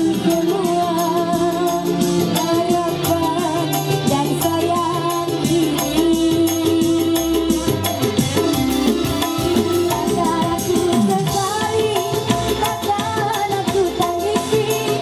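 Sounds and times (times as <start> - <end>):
wavering melody: 0.0 - 11.9
fast percussion beat: 0.0 - 15.0.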